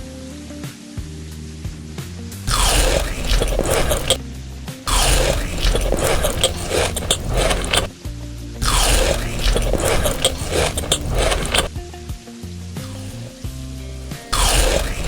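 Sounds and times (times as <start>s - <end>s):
crackling crunchy noise: 2.5s - 4.2s, 4.9s - 8.0s, 8.6s - 11.8s, 12.8s - 13.4s, 14.3s - 15.0s.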